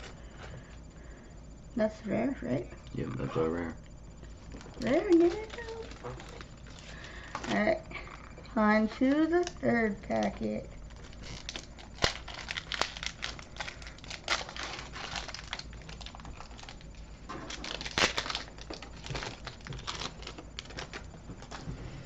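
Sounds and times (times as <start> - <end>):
foil wrapper crinkling: 4.4 - 8.3, 10.2 - 21.6.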